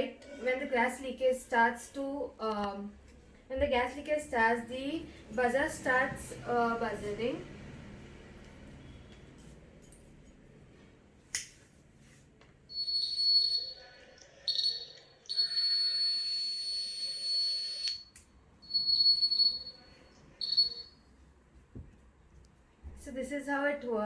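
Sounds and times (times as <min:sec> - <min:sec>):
alarm buzzer high-pitched tone: 0:12.7 - 0:20.9.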